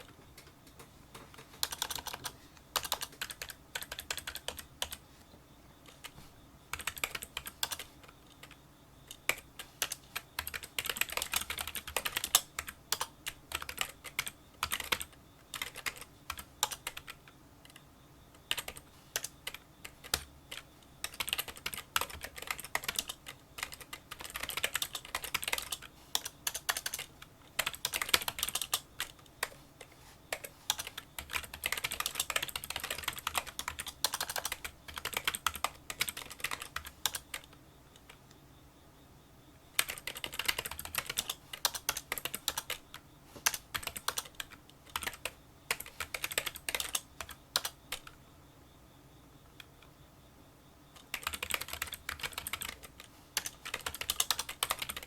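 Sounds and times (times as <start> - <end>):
keyboard typing clicks: 0.0 - 5.0, 18.4 - 38.3, 39.8 - 48.2, 51.0 - 55.0.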